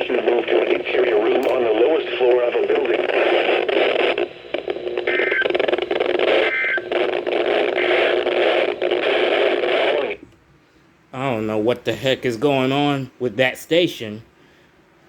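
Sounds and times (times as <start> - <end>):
radio static hiss: 0.0 - 10.4.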